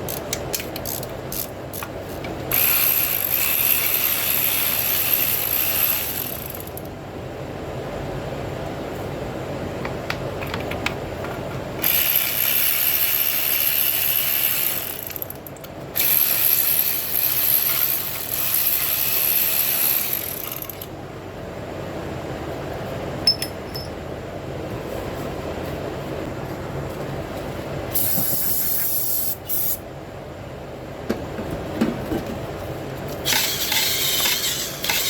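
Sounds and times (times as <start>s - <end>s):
ratchet clicks: 0.0s - 6.9s, 11.8s - 20.9s, 33.2s - 35.0s
steady fan: 0.0s - 35.0s.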